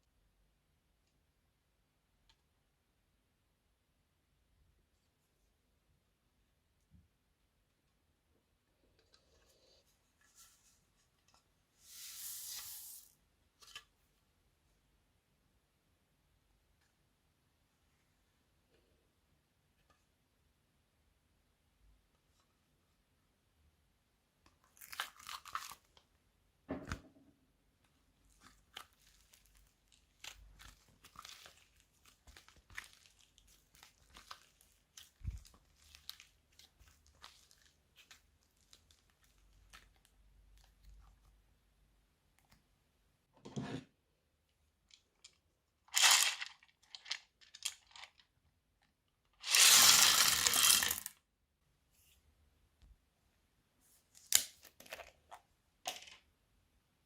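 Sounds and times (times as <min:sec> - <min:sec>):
slime crackling by hand: 0:28.4 - 0:40.0.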